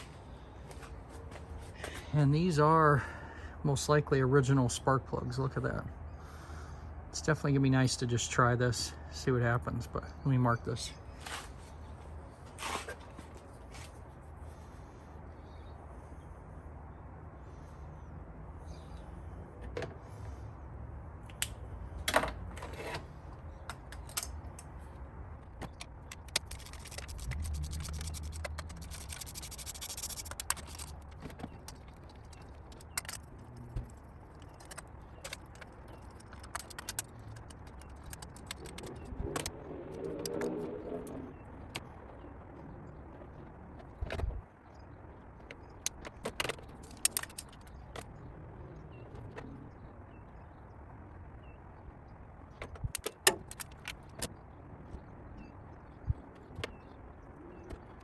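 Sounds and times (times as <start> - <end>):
steady low hum: 23.2 - 58.0.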